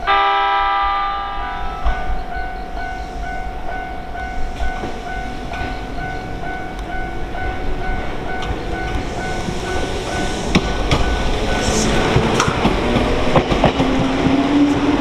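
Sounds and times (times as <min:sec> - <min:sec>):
level crossing warning bell: 0:00.0 - 0:12.2
passing train rumble: 0:00.0 - 0:15.0.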